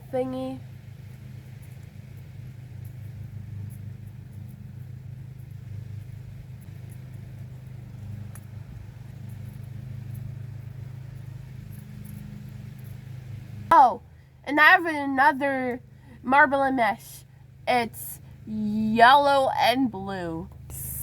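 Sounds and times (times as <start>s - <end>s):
low mechanical hum: 0.0s - 21.0s
faint clicks and ticks: 1.1s - 13.0s.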